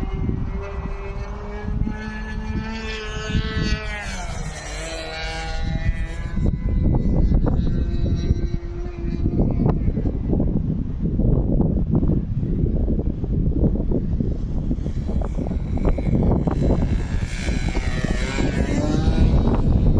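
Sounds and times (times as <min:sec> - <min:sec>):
model airplane engine: 0:00.0 - 0:19.9
wind buffeting microphone: 0:00.0 - 0:19.9.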